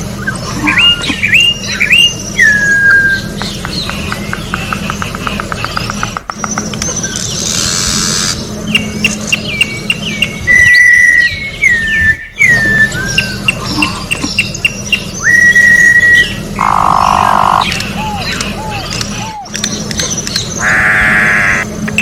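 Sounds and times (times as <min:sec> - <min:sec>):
bird singing whistled phrases: 0:00.2 - 0:03.4, 0:08.7 - 0:19.6.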